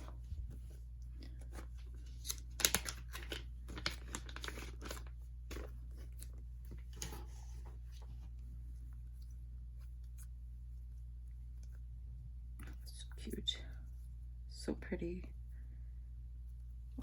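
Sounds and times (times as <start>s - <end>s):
packaging crinkling and tearing: 1.4s - 6.4s.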